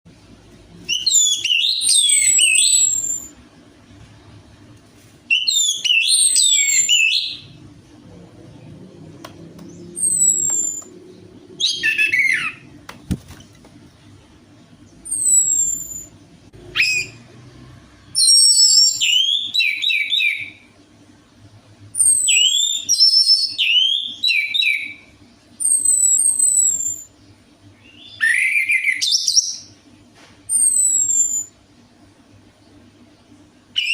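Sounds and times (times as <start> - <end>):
thrush singing whistled phrases: 9.8 - 11.0, 11.6 - 12.7, 15.0 - 17.2.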